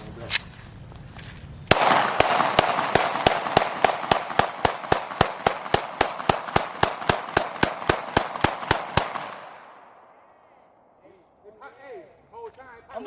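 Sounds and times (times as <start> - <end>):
pistol shots fired rapidly: 1.7 - 9.8.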